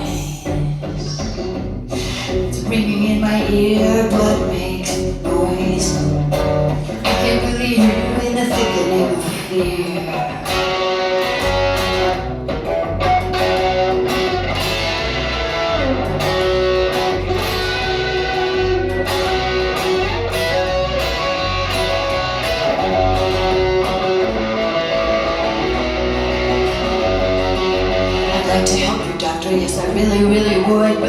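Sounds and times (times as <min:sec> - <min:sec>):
electric guitar: 0:00.0 - 0:31.0
low bass pulse: 0:11.7 - 0:28.9.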